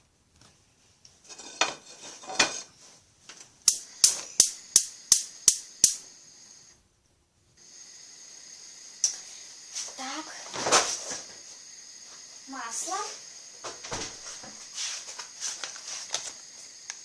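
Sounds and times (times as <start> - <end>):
gas stove igniter clicking: 3.6 - 6.0
gas hissing: 3.6 - 6.8, 7.6 - 17.0.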